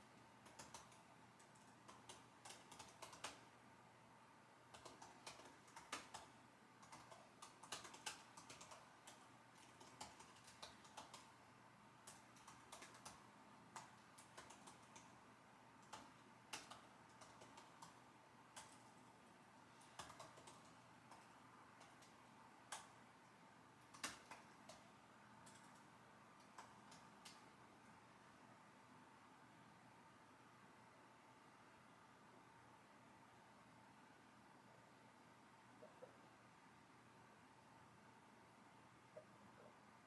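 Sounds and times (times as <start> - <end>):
keyboard typing: 0.4 - 3.5, 4.7 - 11.4, 12.0 - 15.2, 15.8 - 19.1, 19.7 - 23.1, 23.8 - 27.4.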